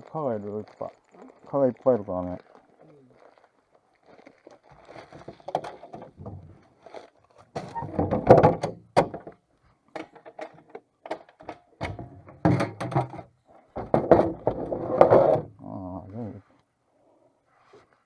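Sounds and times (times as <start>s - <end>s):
objects knocking and clattering: 5.0s - 6.7s, 7.5s - 15.5s.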